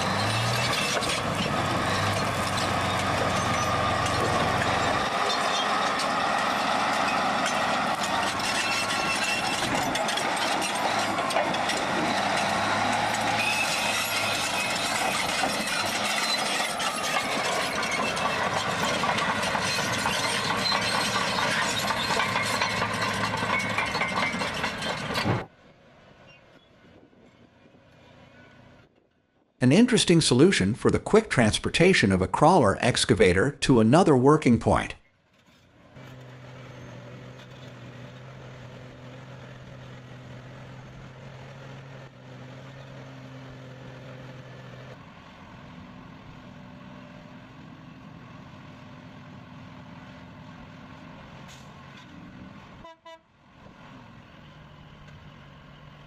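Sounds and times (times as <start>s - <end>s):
heavy machinery engine running: 0.0s - 25.5s, 35.9s - 52.7s.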